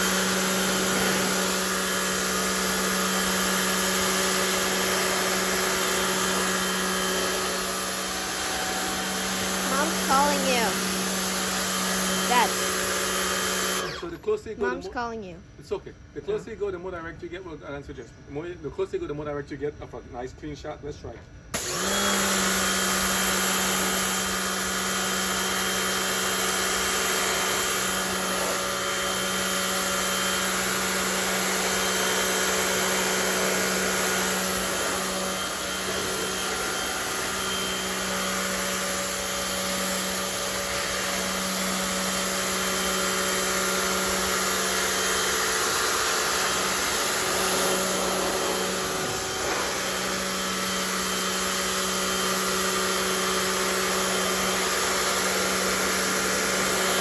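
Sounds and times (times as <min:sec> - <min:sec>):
pressure washer motor humming: 0:00.0 - 0:14.2, 0:21.6 - 0:57.0
water jet hissing: 0:46.7 - 0:50.3.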